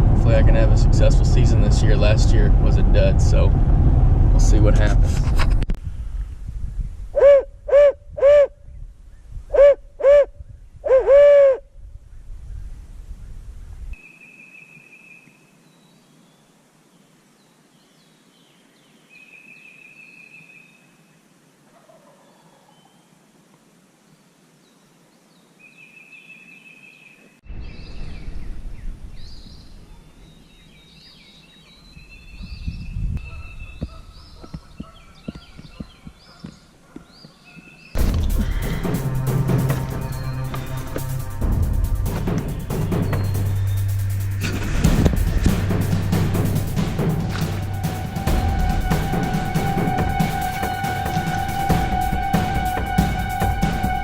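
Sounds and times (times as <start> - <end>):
low rumbling noise: 0.0 - 14.0, 27.4 - 30.8, 38.0 - 54.0
owl call hoots: 7.1 - 8.6, 9.5 - 11.7, 45.5 - 54.0
long steady high whistle: 10.9 - 11.6, 47.4 - 54.0
songbirds singing: 12.0 - 21.3, 24.0 - 41.4, 42.1 - 44.8.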